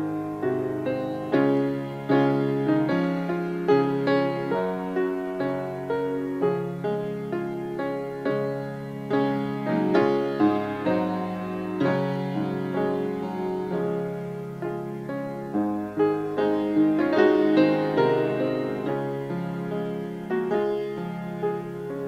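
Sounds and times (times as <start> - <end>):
slow gentle piano music: 0.0 - 22.0.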